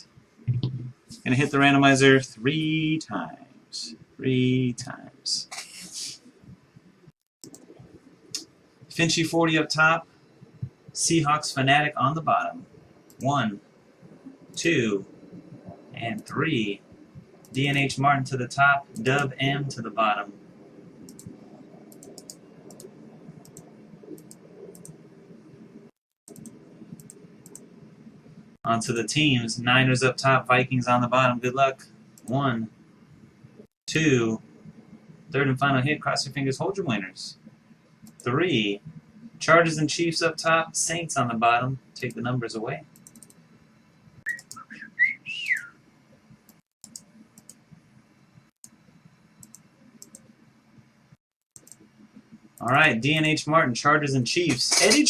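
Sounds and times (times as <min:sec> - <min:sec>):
low room hum: 0:00.0 - 0:55.0
computer mouse clicking: 0:07.4 - 0:08.5, 0:21.0 - 0:25.0, 0:26.3 - 0:27.7, 0:38.0 - 0:38.3, 0:43.0 - 0:43.4, 0:44.3 - 0:44.6, 0:46.4 - 0:47.6, 0:49.4 - 0:50.3, 0:51.6 - 0:51.9
mouse and keyboard clicks: 0:21.1 - 0:25.0, 0:43.0 - 0:43.4
person whistling: 0:44.3 - 0:45.7.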